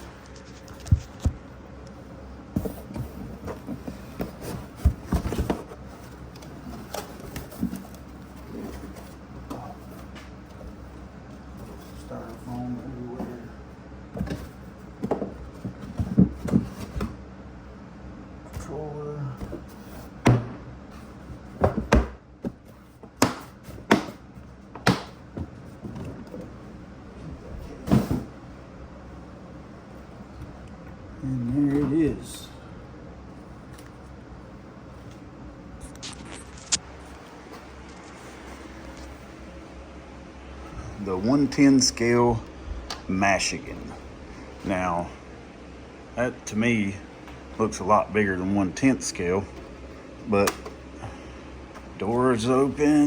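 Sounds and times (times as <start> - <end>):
cardboard packaging rustling: 35.9 - 39.3.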